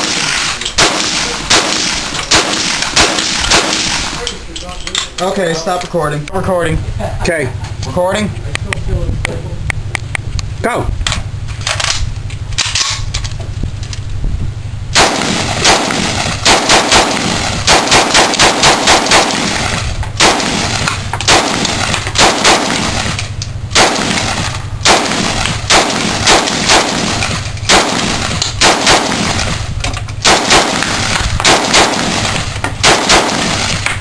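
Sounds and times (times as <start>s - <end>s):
gunshots: 0.0s - 4.4s, 14.9s - 34.0s.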